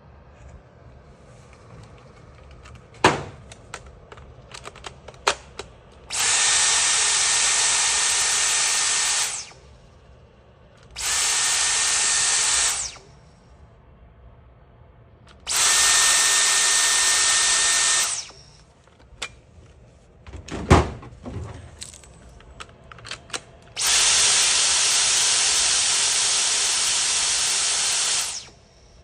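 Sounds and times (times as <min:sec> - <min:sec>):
loud thump: 0:03.0 - 0:03.4, 0:20.3 - 0:21.7
cordless vacuum motor running: 0:06.1 - 0:09.6, 0:11.0 - 0:13.0, 0:15.5 - 0:18.4, 0:23.8 - 0:28.6.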